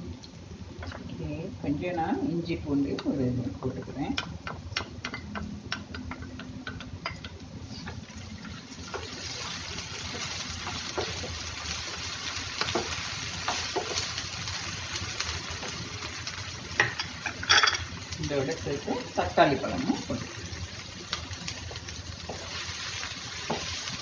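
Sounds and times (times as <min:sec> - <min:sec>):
food sizzling in hot oil: 0:00.9 - 0:24.0.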